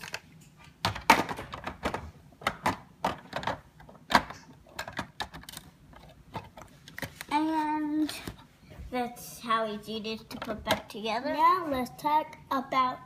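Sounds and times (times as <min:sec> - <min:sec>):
plastic building pieces clicking: 0:00.9 - 0:07.3.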